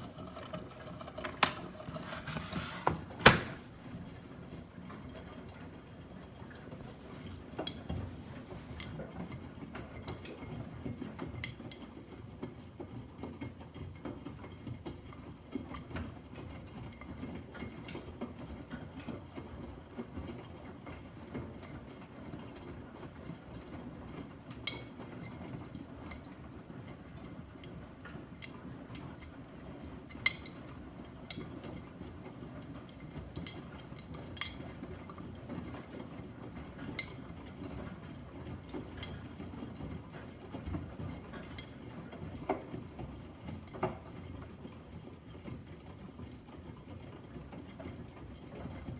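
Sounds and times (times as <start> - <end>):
washing machine rumbling: 0.0 - 9.0.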